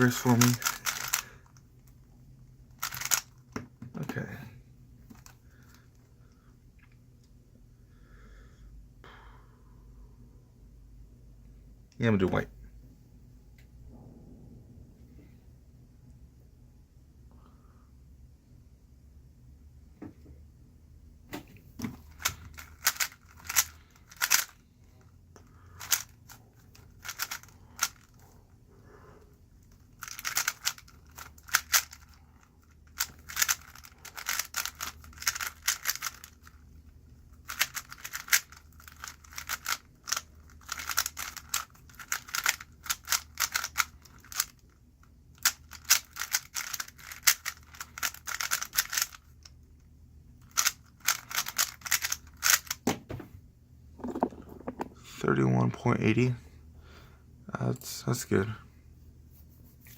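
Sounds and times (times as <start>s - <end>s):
plastic puzzle cube clicking: 0.1s - 1.3s, 2.8s - 3.4s, 22.2s - 24.6s, 25.8s - 28.1s, 30.0s - 32.2s, 33.0s - 36.6s, 37.4s - 44.6s, 45.4s - 49.3s, 50.4s - 52.8s.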